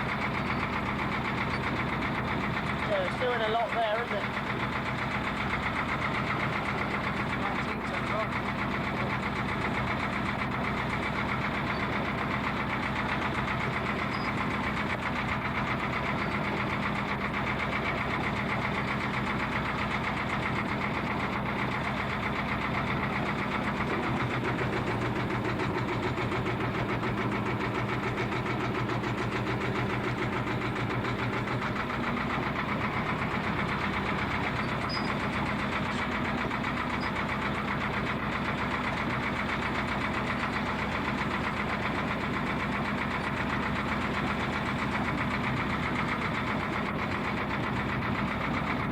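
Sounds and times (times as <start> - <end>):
boat engine humming: 0.0 - 48.9.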